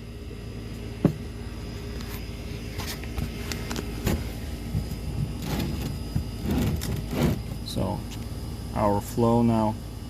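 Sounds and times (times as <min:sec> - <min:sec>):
steady low hum: 0:00.0 - 0:10.0
filter housing scraping and knocking: 0:02.0 - 0:07.6.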